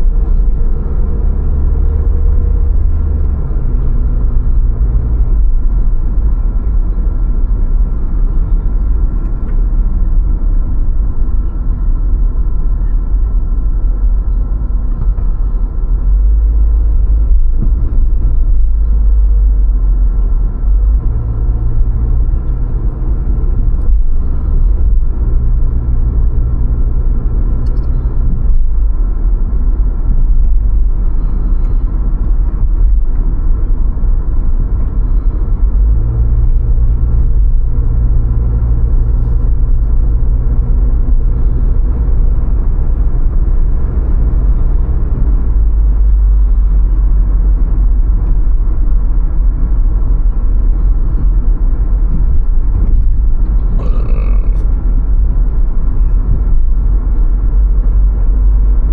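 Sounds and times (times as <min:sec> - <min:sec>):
deeper hum: 0:00.0 - 0:58.9
engine and road rumble: 0:00.0 - 0:58.9.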